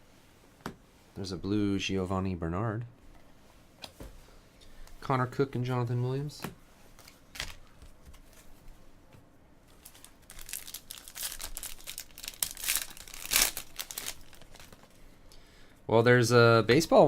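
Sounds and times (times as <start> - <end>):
foil wrapper crinkling and tearing: 9.7 - 15.0.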